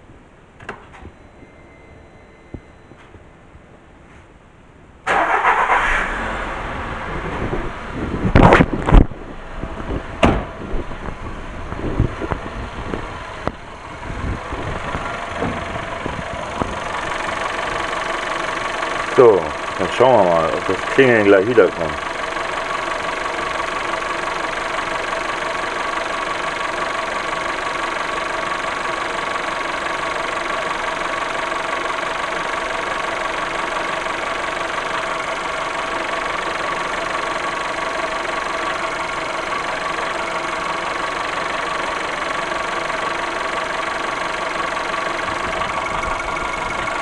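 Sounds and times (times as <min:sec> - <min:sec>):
car engine idling: 0:05.0 - 0:47.0.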